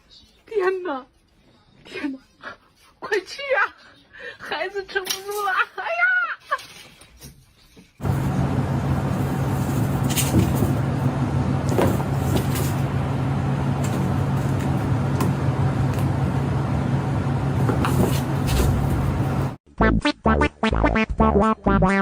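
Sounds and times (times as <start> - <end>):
engine hum and rushing noise: 8.0 - 19.6.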